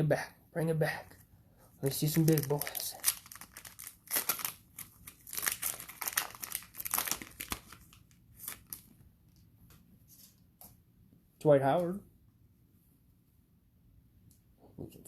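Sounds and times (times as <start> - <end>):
cellophane wrapper crinkling: 1.8 - 9.0.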